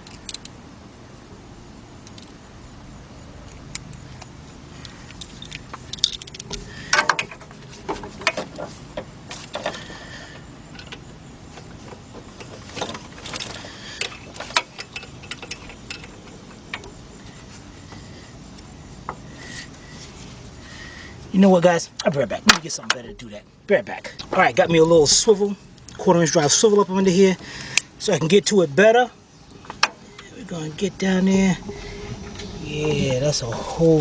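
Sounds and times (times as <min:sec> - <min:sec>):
wrench clinking on metal: 0:05.1 - 0:07.3.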